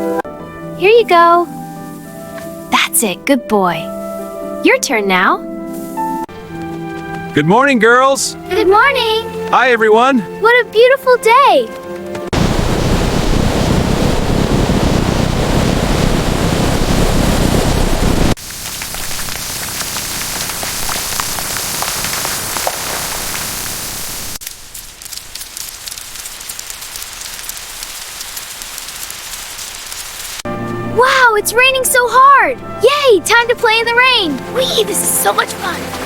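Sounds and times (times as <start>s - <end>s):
patter of fine rain: 12.0s - 30.5s, 33.0s - 36.0s
rain drops splashing: 12.1s - 30.8s, 31.6s - 36.0s
heavy rain downpour: 12.3s - 30.4s, 33.6s - 36.0s.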